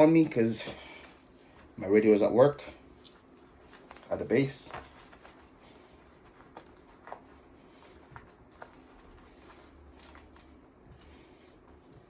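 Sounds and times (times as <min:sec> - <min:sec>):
light rustling of gear: 0:02.8 - 0:12.0.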